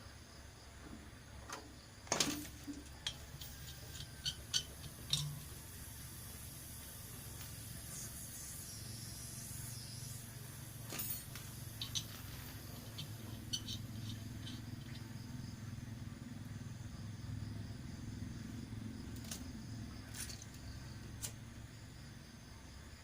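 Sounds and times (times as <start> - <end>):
refrigerator compressor humming: 0.0 - 23.0
light metallic clicks: 2.3 - 5.5.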